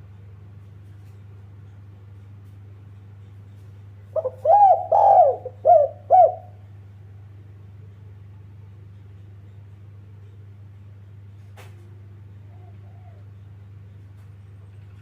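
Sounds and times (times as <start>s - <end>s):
steady low hum: 0.0s - 15.0s
dove cooing: 4.1s - 6.6s, 12.3s - 13.5s.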